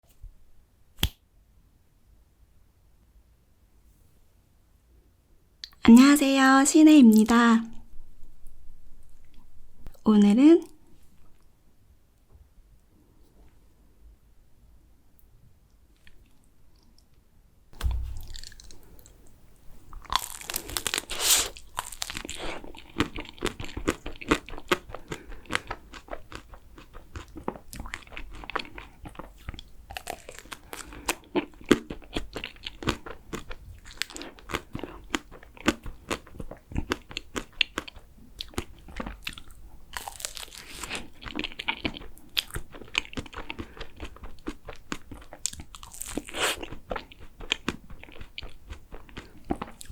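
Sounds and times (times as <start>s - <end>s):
crunchy bites: 17.8s - 19.1s, 19.9s - 49.9s
person chewing ice cream: 19.8s - 49.9s.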